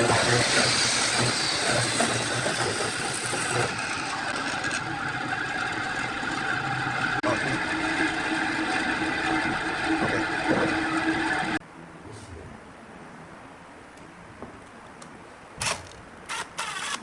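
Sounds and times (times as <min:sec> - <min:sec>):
power tool motor running: 0:00.0 - 0:11.6, 0:15.6 - 0:17.0.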